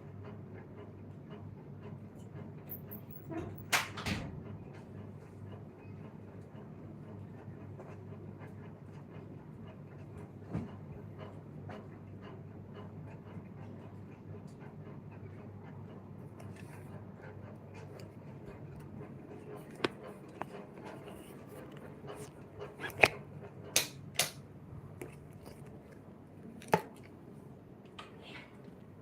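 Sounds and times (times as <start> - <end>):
sharp clicks and knocks: 19.6 - 24.4.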